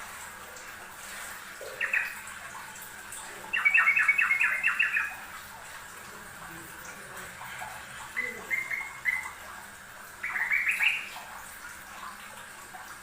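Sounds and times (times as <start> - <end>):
bulbul singing: 1.7 - 2.2, 3.5 - 5.3, 8.1 - 9.4, 10.2 - 11.2.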